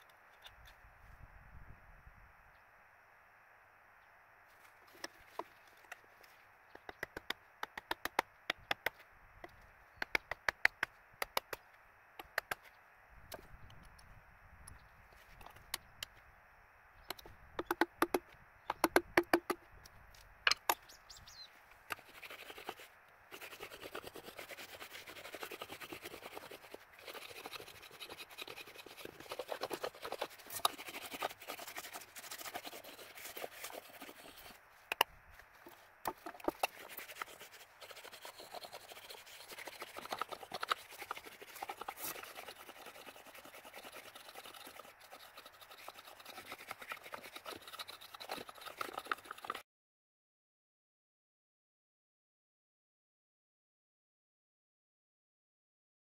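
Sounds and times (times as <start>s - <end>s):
scratching and scraping: 21.9s - 49.6s.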